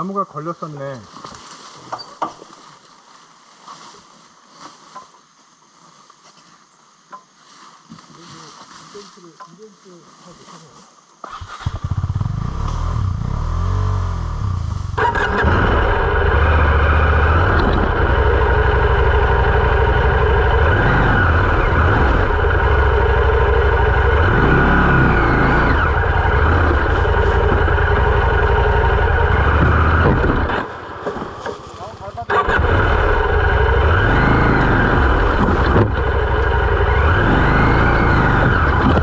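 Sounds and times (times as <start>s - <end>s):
motorcycle engine revving: 11.2s - 39.0s.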